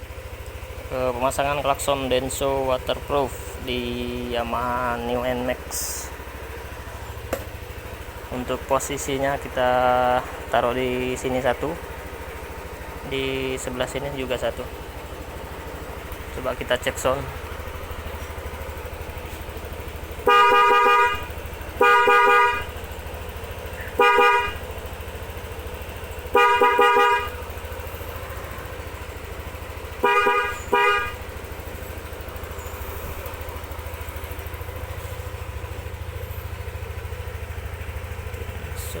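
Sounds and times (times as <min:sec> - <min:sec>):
electric horn honks: 0:20.2 - 0:22.8, 0:23.8 - 0:24.7, 0:26.2 - 0:27.6, 0:29.9 - 0:31.4.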